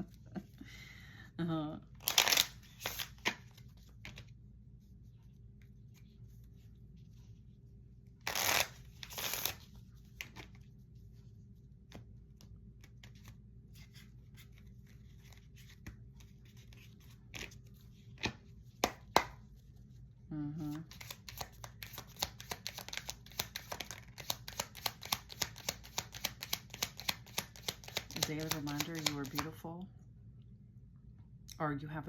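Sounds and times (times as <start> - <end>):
cards shuffling: 2.0 - 4.3, 8.2 - 10.6, 11.8 - 19.5, 20.6 - 29.5
cards tapping and clicking: 18.2 - 19.4, 20.9 - 29.5
sharp card snaps: 21.0 - 29.5.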